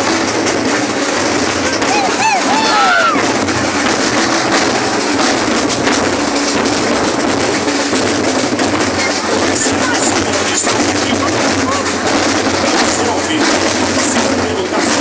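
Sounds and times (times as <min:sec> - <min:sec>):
marching drums: 0:00.0 - 0:15.0.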